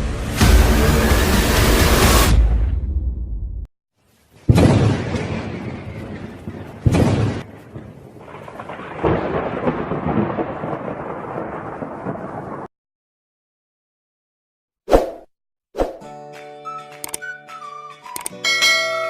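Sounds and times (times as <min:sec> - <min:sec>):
thunderclaps: 0:04.5 - 0:12.7.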